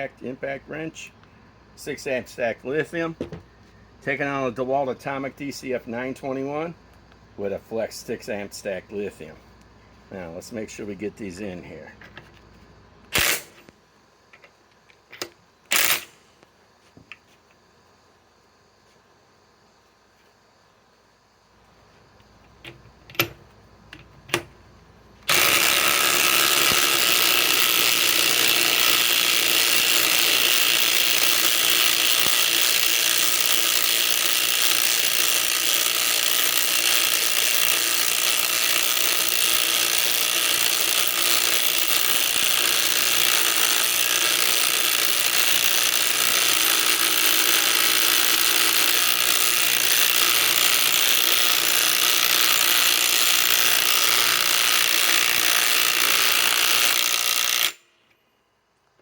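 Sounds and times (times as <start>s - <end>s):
impact wrench hammering: 13.2s - 13.6s, 15.2s - 16.2s, 25.3s - 57.8s.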